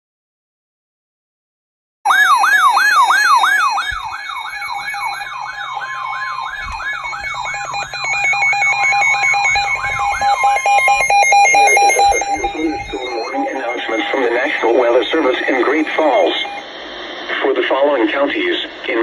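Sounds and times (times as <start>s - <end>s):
steady alert tone: 2.1s - 16.7s
electronic siren sweeping: 2.1s - 19.0s
rapidly switching higher tone: 2.1s - 19.0s.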